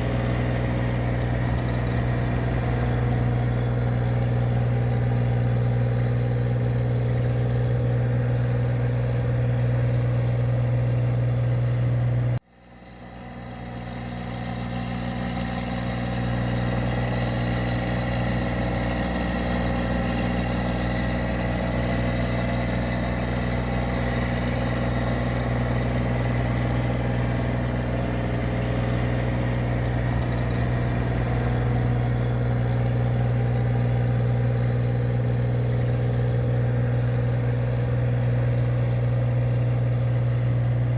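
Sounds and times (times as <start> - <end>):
engine droning steadily: 0.0 - 40.9.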